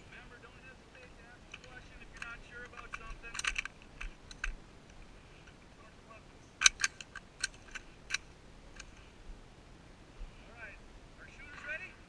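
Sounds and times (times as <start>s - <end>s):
rifle metallic clicks: 1.5s - 5.6s, 6.6s - 9.0s.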